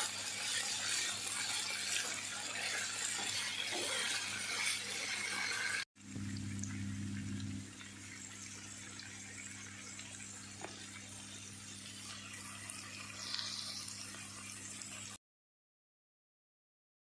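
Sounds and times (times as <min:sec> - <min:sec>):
low steady hum: 0:06.0 - 0:11.8.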